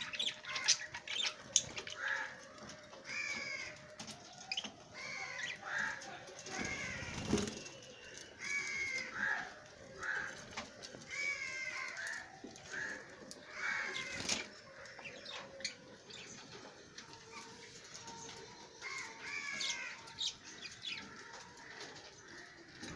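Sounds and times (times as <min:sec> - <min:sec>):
lovebirds screeching chirps: 0:00.0 - 0:02.4.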